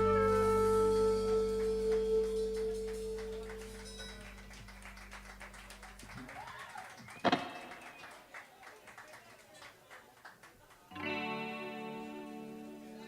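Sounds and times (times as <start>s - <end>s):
band holding a final chord: 0.0s - 5.6s.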